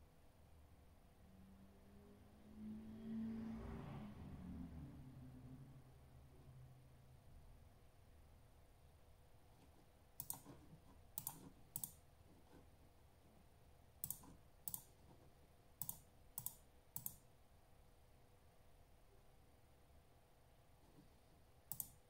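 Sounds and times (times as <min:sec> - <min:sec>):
sharp clicks: 0:10.2 - 0:10.5, 0:11.2 - 0:12.0, 0:14.0 - 0:14.9, 0:15.8 - 0:17.2, 0:21.7 - 0:22.0.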